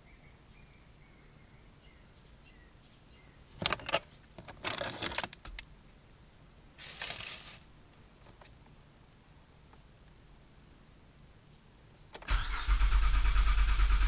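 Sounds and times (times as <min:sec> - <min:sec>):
short rustle: 0:06.8 - 0:07.7.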